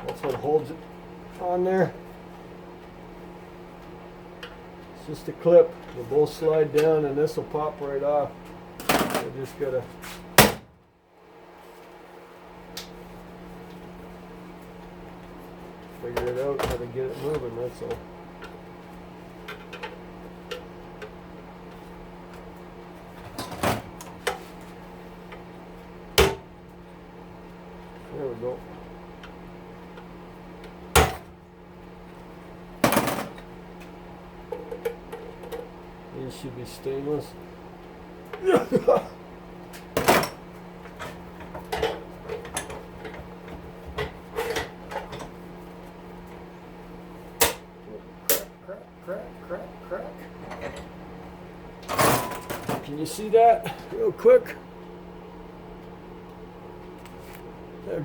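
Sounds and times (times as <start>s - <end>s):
steady low hum: 0.0s - 58.0s
metal oven parts clanking: 50.3s - 50.9s, 51.8s - 53.0s.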